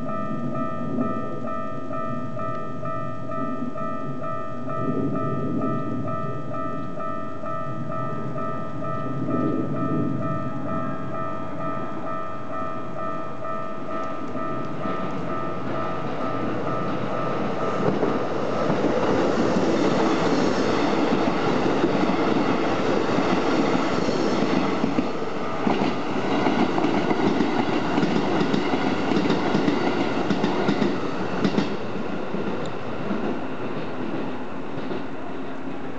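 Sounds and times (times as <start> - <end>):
level crossing bell ringing: 0.0 - 18.5
electric train passing: 0.0 - 35.9
train wheels clacking over rail joints: 23.2 - 31.8.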